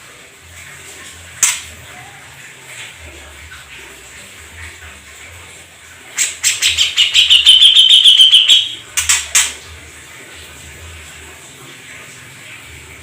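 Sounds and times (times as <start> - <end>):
songbird chattering trill: 6.7 - 8.8.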